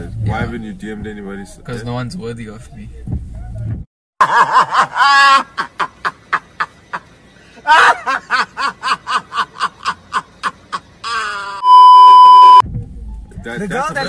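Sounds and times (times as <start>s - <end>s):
person laughing: 4.2s - 11.6s
loud electronic beep: 11.6s - 12.6s.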